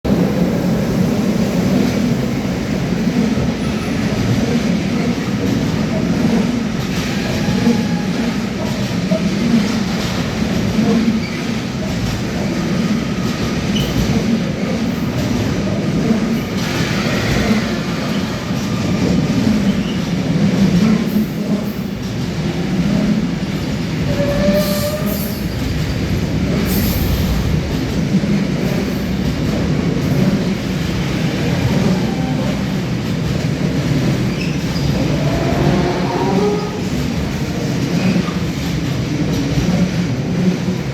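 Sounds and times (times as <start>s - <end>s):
freight train rumble: 0.0s - 40.9s
train wheels squealing on rails: 1.8s - 14.3s, 16.4s - 20.2s, 23.4s - 27.4s, 30.1s - 38.8s.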